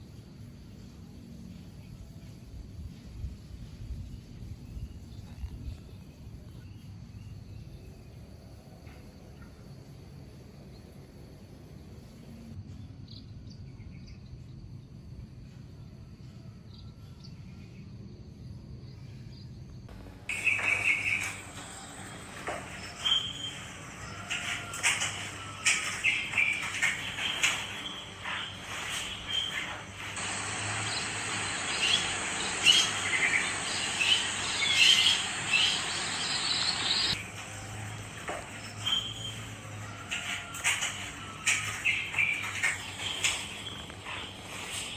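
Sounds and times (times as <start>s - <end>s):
low steady hum: 18.8s - 39.8s
birds chirping: 19.9s - 37.2s, 41.2s - 44.9s
steady hiss: 19.9s - 44.9s.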